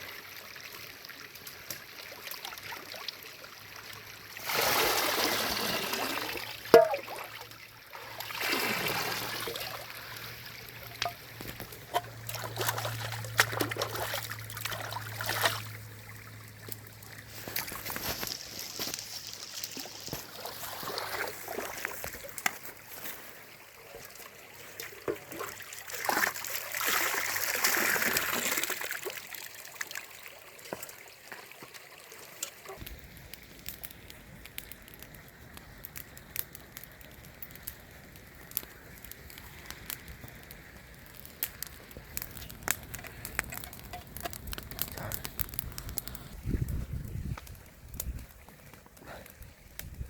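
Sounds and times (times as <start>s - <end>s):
water sloshing and splashing: 1.6s - 32.9s
sharp crackles and clicks: 9.6s - 14.8s, 16.5s - 20.7s, 32.4s - 50.0s.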